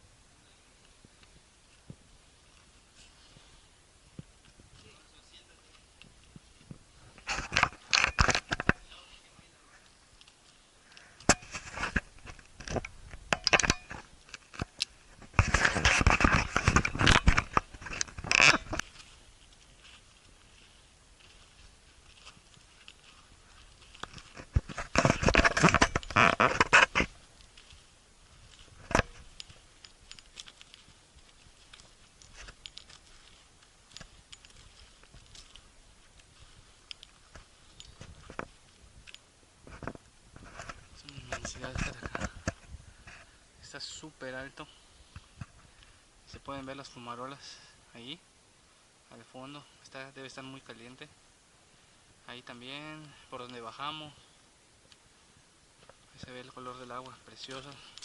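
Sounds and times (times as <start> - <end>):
faint steady hiss: 0.0 - 58.0
footsteps on loose gravel: 4.2 - 43.4, 55.8 - 58.0.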